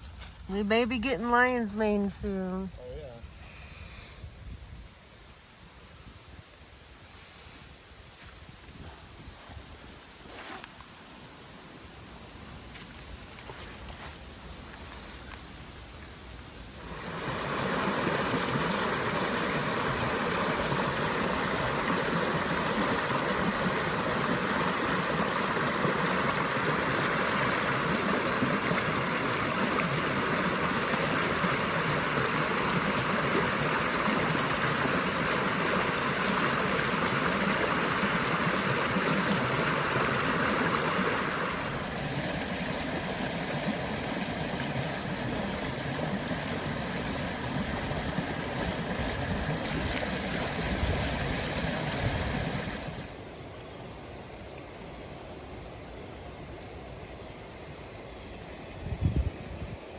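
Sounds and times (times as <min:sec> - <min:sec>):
stream flowing: 0:15.3 - 0:59.9.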